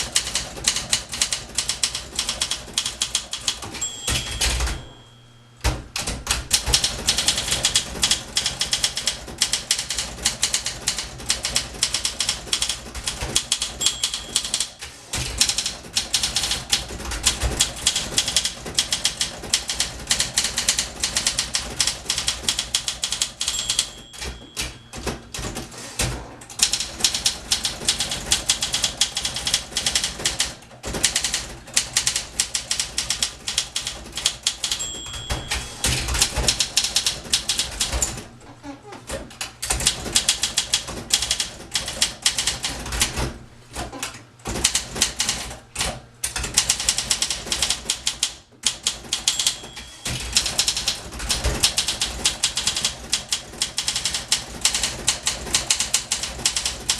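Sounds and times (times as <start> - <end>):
typewriter typing: 0.0 - 5.0, 5.6 - 38.4, 39.0 - 56.9
typewriter carriage return: 0.0 - 56.9
typewriter margin bell ding: 3.7 - 5.4, 13.7 - 14.9, 23.2 - 25.6, 34.6 - 36.7, 49.1 - 50.8.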